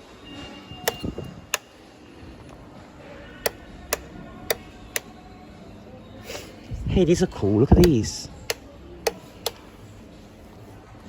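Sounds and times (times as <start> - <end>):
sharp crisp clicks: 0.9 - 1.7.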